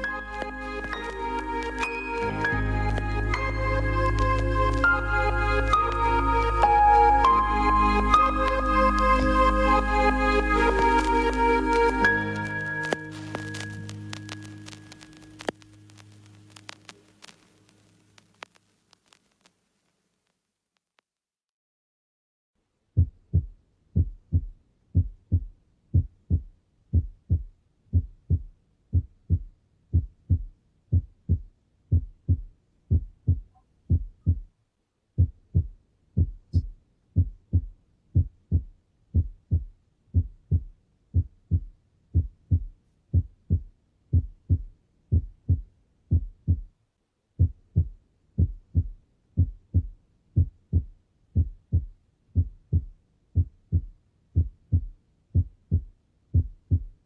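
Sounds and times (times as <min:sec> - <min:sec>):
heartbeat through stethoscope: 0:23.0 - 0:34.5, 0:35.2 - 0:46.7, 0:47.4 - 0:57.0.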